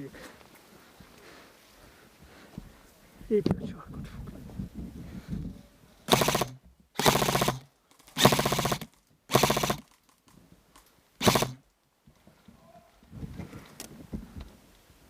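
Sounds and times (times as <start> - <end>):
airsoft rifle firing bursts: 6.1 - 9.9, 11.2 - 11.6.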